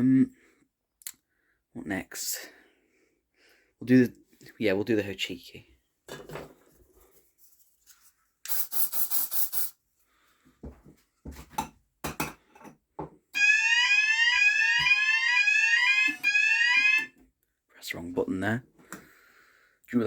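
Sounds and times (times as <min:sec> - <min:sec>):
aerosol spray hissing puffs: 0:08.5 - 0:09.8
fire alarm high-low tone: 0:13.4 - 0:17.2
fire alarm rising sweeps: 0:13.4 - 0:17.2.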